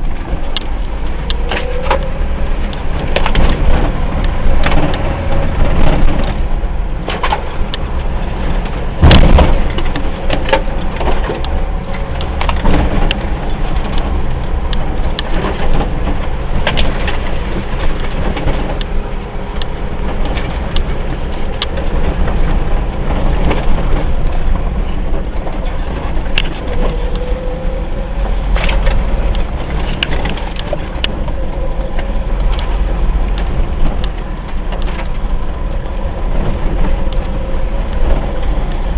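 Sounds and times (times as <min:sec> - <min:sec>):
car driving rumble: 0:00.0 - 0:38.9
knocks and rattles: 0:07.1 - 0:19.0
loud thump: 0:09.0 - 0:09.7.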